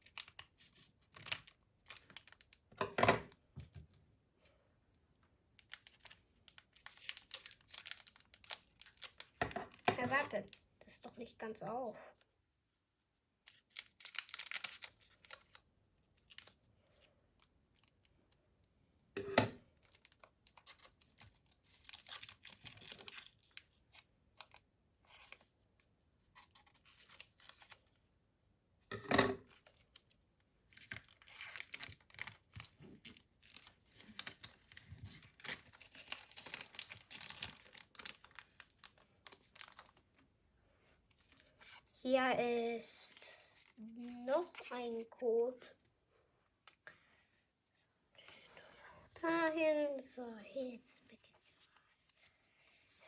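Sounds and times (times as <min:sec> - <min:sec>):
packaging rustling and tearing: 0:00.0 - 0:02.7, 0:05.6 - 0:10.6, 0:13.4 - 0:18.0, 0:19.8 - 0:25.6, 0:26.2 - 0:28.1, 0:29.4 - 0:40.2.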